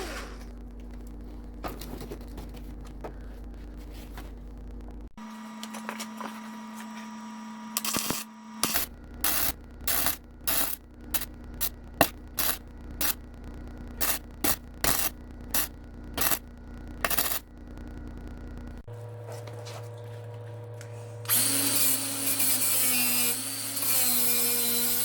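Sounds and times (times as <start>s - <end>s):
welding arc crackle: 7.8s - 18.8s, 21.3s - 25.0s.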